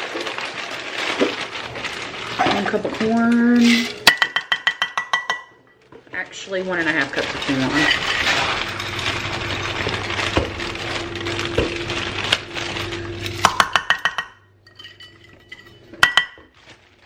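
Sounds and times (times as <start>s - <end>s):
corn pouring into pot: 0.0s - 4.2s, 6.4s - 14.2s
dishware clinking: 3.6s - 5.8s, 13.4s - 16.5s.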